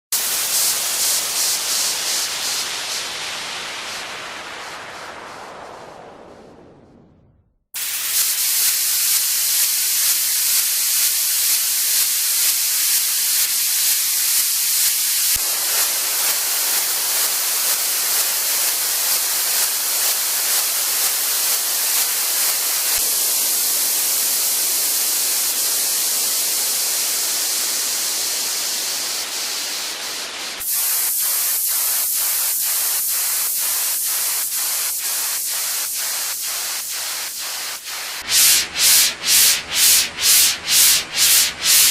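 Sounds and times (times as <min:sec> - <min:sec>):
rhythmically chopped hiss: 0:00.1 - 0:05.2, 0:07.8 - 0:41.9
pulsing high hiss: 0:00.1 - 0:05.7, 0:07.8 - 0:41.9
steady synthesized hiss: 0:00.1 - 0:06.3, 0:07.8 - 0:41.9.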